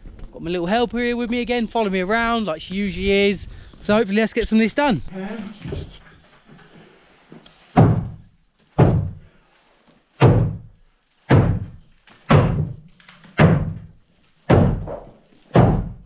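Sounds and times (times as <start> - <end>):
heavy thuds on wooden timber: 7.8 - 9.3, 10.2 - 10.7, 11.3 - 16.0.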